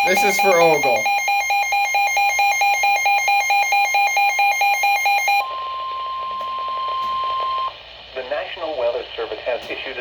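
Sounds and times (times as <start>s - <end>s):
steady warning alarm tone: 0.0s - 7.8s.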